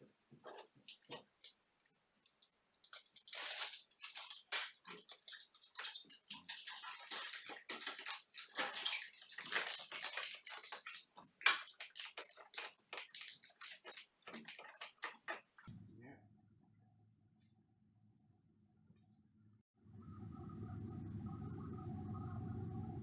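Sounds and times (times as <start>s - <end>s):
water running and splashing: 2.9s - 15.7s.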